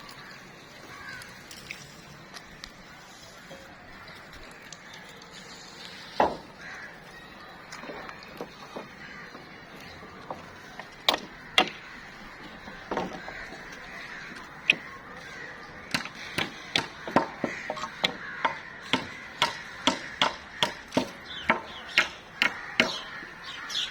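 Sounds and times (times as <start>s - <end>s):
hand tool knocking: 15.9s - 23.2s.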